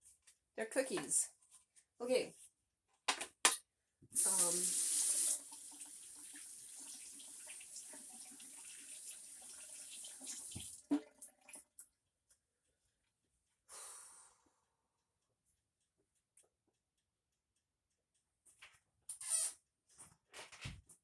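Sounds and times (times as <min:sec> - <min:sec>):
water hiss: 0:04.2 - 0:05.5
tap water running into sink: 0:04.2 - 0:11.8.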